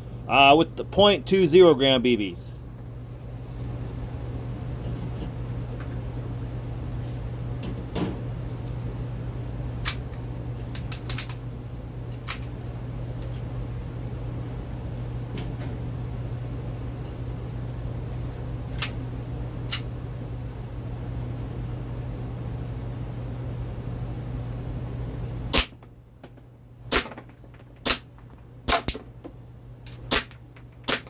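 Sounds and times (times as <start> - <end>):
steady low hum: 0.0 - 31.0
airsoft pistol shots: 25.5 - 25.8, 26.9 - 27.2, 27.8 - 28.1, 28.7 - 29.0, 30.1 - 31.0.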